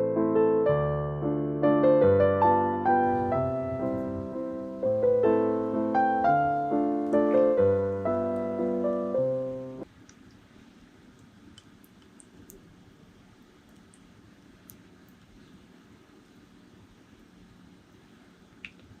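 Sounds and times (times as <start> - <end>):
piano melody over bass: 0.0 - 9.8.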